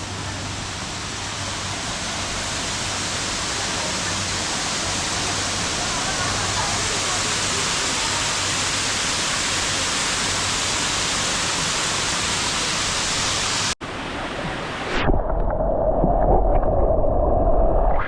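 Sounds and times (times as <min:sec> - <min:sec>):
waterfall rushing: 0:00.0 - 0:14.9
low rumble: 0:15.0 - 0:18.0.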